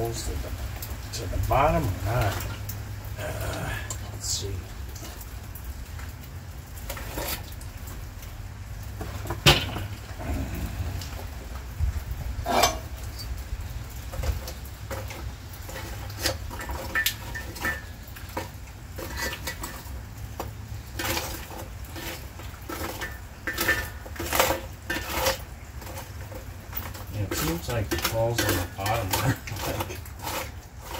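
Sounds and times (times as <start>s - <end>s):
heavy rain: 0.0s - 30.9s
metal pot lid clinks and knocks: 12.5s - 12.9s.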